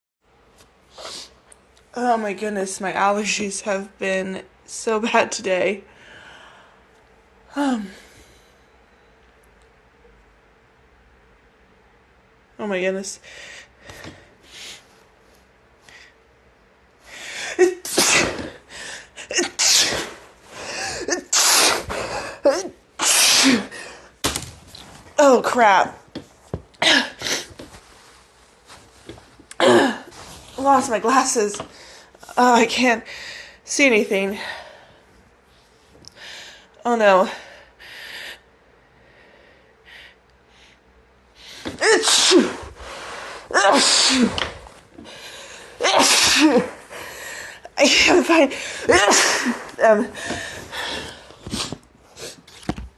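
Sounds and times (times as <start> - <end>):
person sneezing loudly: 17.6 - 18.6, 19.2 - 23.8, 29.5 - 30.2, 41.6 - 42.8, 43.5 - 44.6, 45.8 - 46.9, 47.9 - 52.4.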